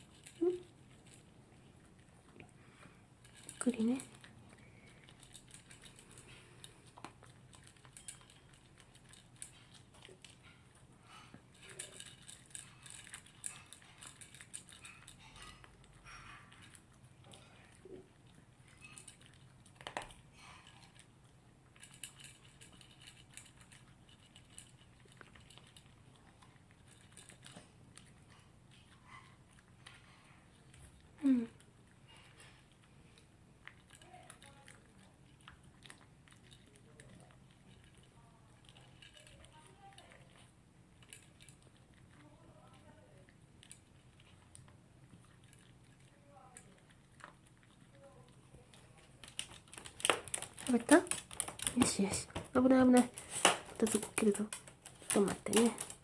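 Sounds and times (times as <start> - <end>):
dog chewing food: 0.0 - 56.0.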